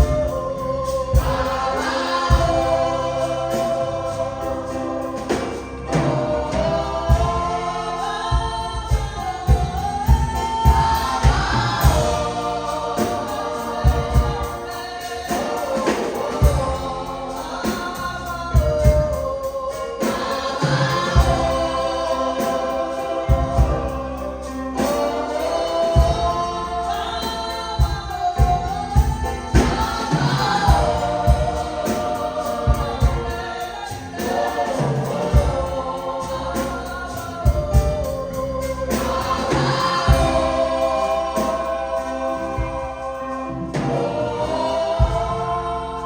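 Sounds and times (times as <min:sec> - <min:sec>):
choir singing gospel song: 0:00.0 - 0:46.0
low drum beats: 0:04.4 - 0:14.7, 0:16.2 - 0:19.4, 0:21.1 - 0:22.0, 0:27.8 - 0:33.6, 0:35.0 - 0:43.1, 0:43.8 - 0:45.6.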